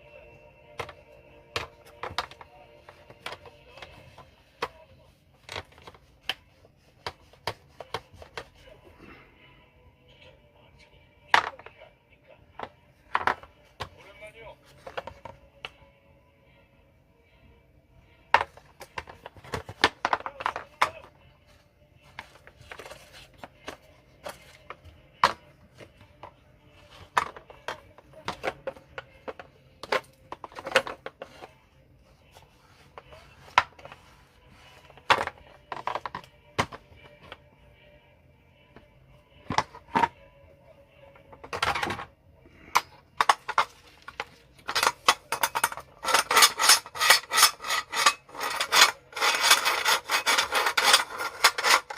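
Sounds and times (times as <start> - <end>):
scraping strokes: 46.0 - 51.9.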